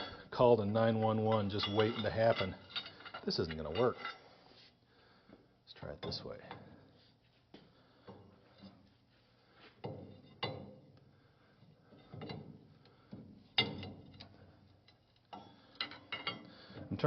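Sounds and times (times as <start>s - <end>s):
steel wrenches clanking: 0.0s - 4.4s, 11.8s - 17.0s.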